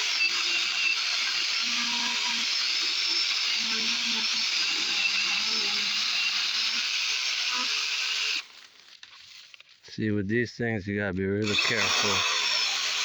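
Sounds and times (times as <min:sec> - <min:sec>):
mini chainsaw whining: 0:00.0 - 0:08.6, 0:11.4 - 0:13.0.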